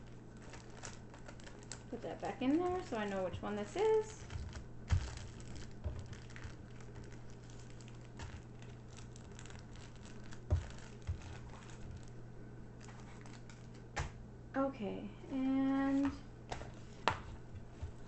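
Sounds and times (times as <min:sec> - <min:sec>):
plastic bags rustling: 0:00.0 - 0:14.1.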